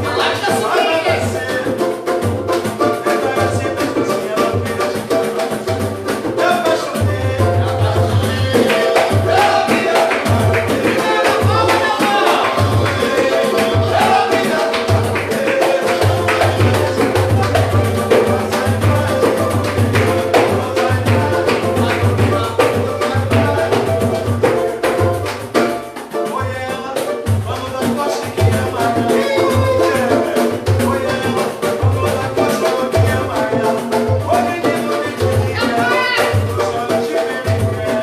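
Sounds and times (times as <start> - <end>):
live samba band: 0.0 - 38.0
deep drum beat: 3.5 - 25.6.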